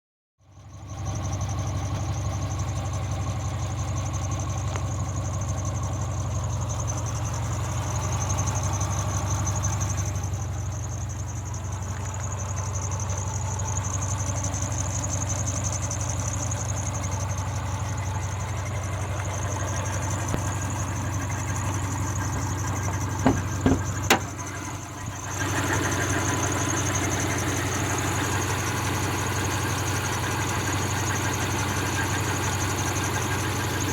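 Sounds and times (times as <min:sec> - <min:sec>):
car engine idling: 0:00.5 - 0:33.9
high chirping belt squeak: 0:19.5 - 0:25.3.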